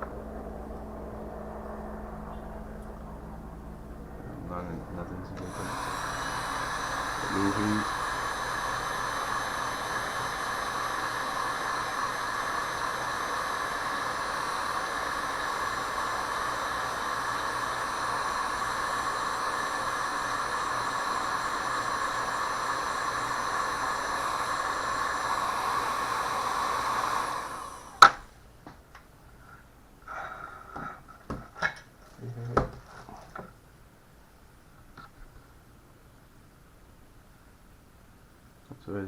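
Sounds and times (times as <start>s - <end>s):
heat gun blowing hiss: 5.4s - 28.3s.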